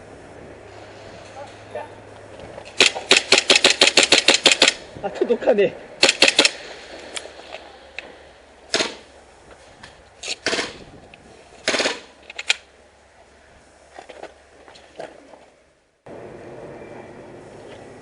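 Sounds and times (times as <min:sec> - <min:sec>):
airsoft guns firing: 0:02.8 - 0:04.8, 0:06.0 - 0:07.0, 0:08.7 - 0:09.1, 0:10.4 - 0:10.8, 0:11.6 - 0:12.1.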